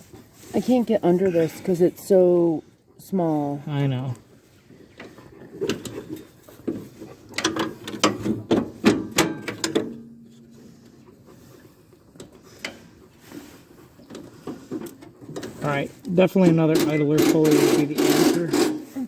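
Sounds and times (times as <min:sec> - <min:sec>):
metal tool clicking and clanking: 0:07.4 - 0:10.0, 0:16.7 - 0:19.0.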